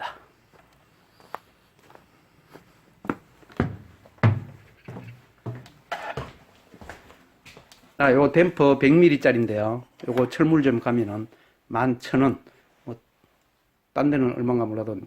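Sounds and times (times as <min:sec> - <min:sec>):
footsteps: 0:00.5 - 0:08.8
knocks and thuds: 0:03.6 - 0:05.6.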